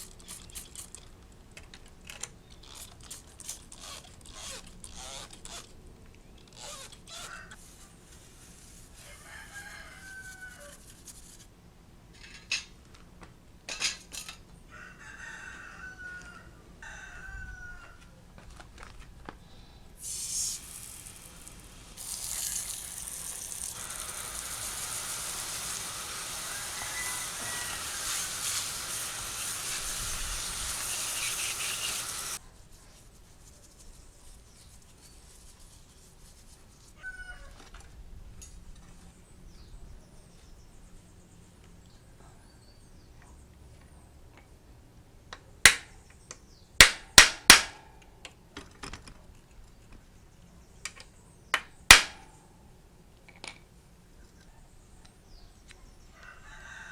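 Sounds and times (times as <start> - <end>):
rooster crowing: 7.1 - 7.6, 9.0 - 10.8, 14.7 - 18.2, 23.7 - 32.4, 37.0 - 37.7, 56.1 - 56.9
loud steady hiss: 19.9 - 32.4.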